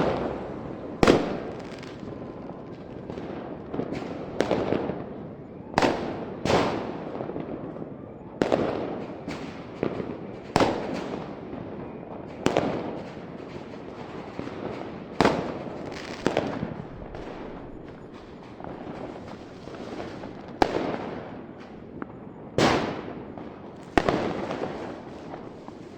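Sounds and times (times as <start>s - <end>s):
fireworks banging with echo: 0.0s - 25.9s.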